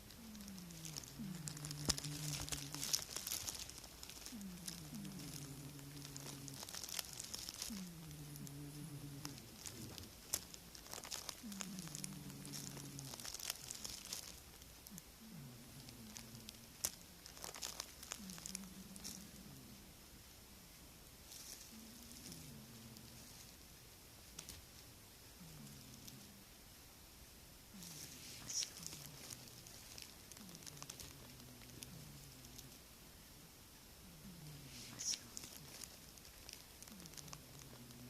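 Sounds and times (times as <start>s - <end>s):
light crackling rustling clicks: 0.0s - 15.1s, 15.8s - 19.4s, 34.6s - 38.0s
cat snoring: 0.0s - 20.0s, 21.3s - 23.6s, 25.4s - 26.5s, 27.7s - 38.0s.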